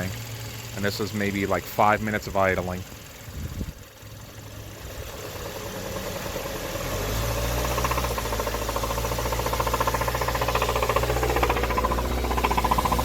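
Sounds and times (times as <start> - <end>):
car engine revving: 3.9 - 13.0
rhythmic engine knock: 7.5 - 13.0.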